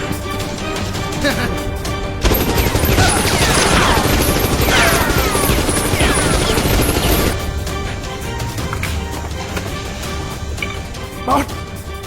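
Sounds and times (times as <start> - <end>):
action music: 0.0 - 12.0
gunfire sound effects: 2.3 - 7.4.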